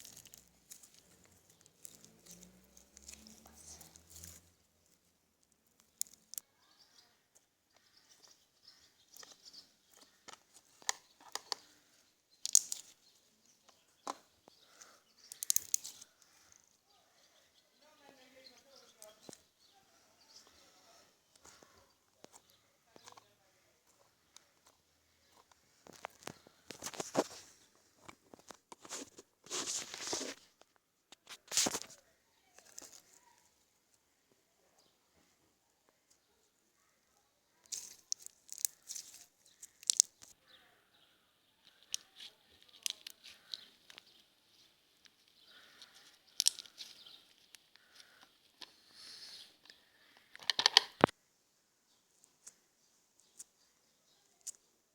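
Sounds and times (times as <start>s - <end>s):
slime popping and crackling: 0.0s - 4.5s, 12.4s - 12.9s, 15.3s - 16.0s, 37.7s - 40.3s
slime squishing and popping: 15.3s - 15.9s.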